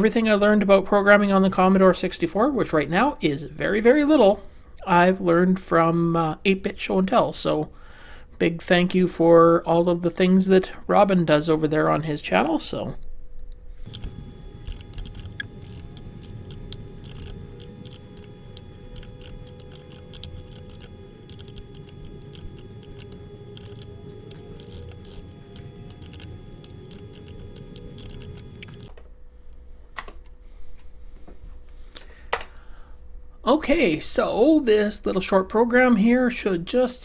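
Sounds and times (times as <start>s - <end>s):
steady hum: 13.1s - 34.6s
keyboard key clicks: 13.9s - 29.0s.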